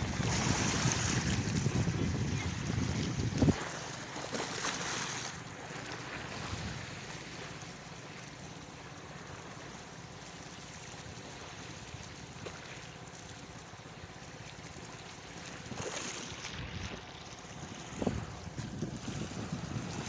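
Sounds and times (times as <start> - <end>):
wind buffeting microphone: 0.0 - 4.0, 6.3 - 7.0, 16.5 - 20.0
surf: 0.0 - 9.6
seaside wind: 0.0 - 20.0.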